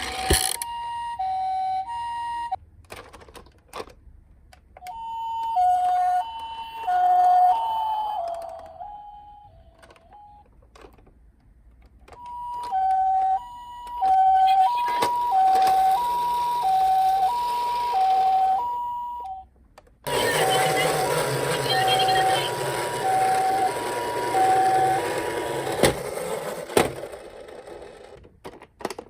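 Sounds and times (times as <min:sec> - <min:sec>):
toy electronic siren two-tone wail: 0:00.4 - 0:02.6, 0:04.8 - 0:10.4, 0:12.2 - 0:19.5, 0:20.1 - 0:25.8.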